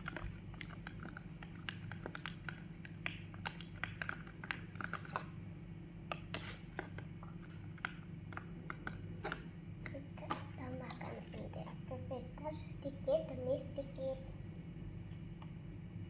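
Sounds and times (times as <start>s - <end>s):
sticky clicks and wet pops: 0.0s - 5.4s, 6.1s - 11.6s.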